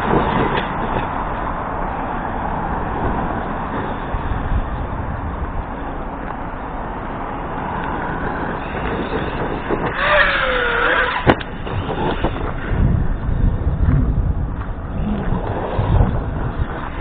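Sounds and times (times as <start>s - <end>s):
wind and terrain rumble: 0.0s - 17.0s
electric motor whining: 7.9s - 17.0s.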